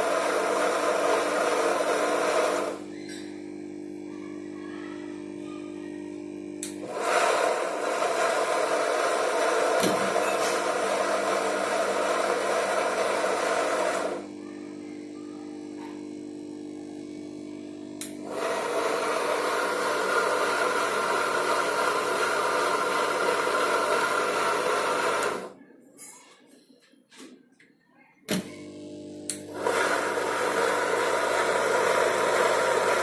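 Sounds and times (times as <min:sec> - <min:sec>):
washing machine spinning drum: 0:00.0 - 0:02.8, 0:06.8 - 0:14.3, 0:18.2 - 0:25.5, 0:29.5 - 0:33.0.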